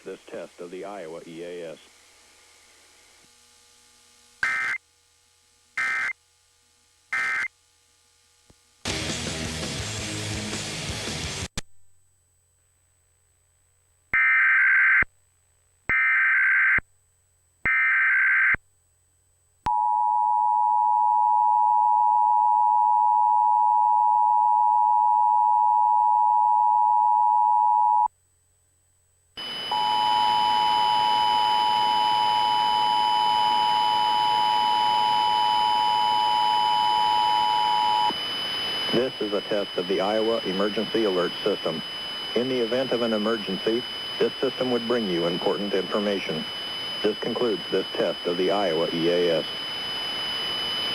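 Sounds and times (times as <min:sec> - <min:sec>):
harsh digital data bursts: 0:04.4 - 0:04.8, 0:05.8 - 0:06.2, 0:07.1 - 0:07.5, 0:29.4 - 0:50.9.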